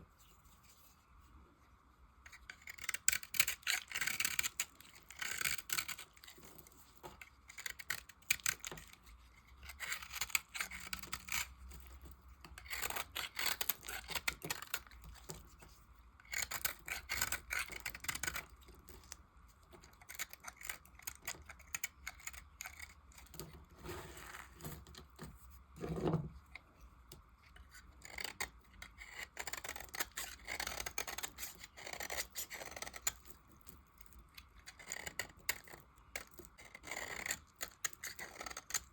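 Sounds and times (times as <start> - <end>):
blade cutting soap: 2.3 - 38.9.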